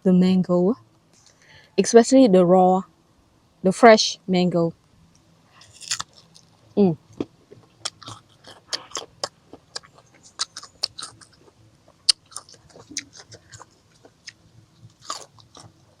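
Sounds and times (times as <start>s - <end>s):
chewing crisp mango crunches: 5.6s - 16.0s
wet mouth clicks: 7.5s - 11.4s, 12.1s - 13.7s.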